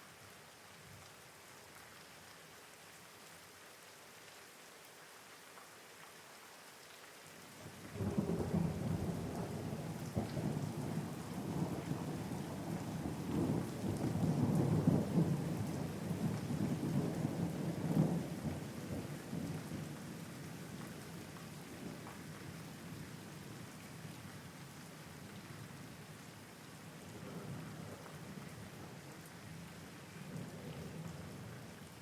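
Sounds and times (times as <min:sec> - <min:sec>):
steady rain falling: 0:00.0 - 0:32.0
thunder rumbling: 0:08.0 - 0:19.5.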